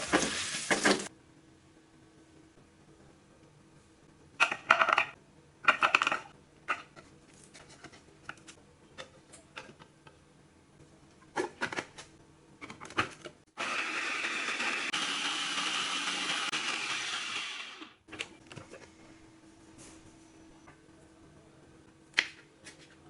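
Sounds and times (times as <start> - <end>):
electric blender grinding: 13.6 - 18.0.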